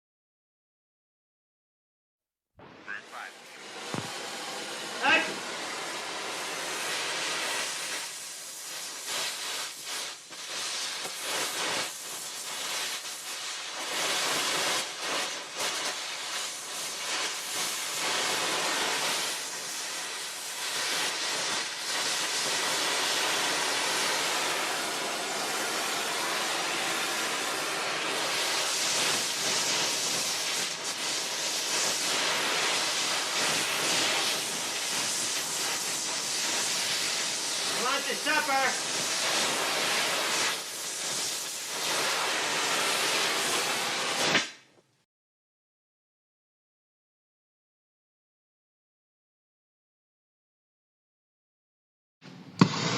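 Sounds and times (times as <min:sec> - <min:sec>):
rushing steam hiss: 0:02.9 - 0:44.6.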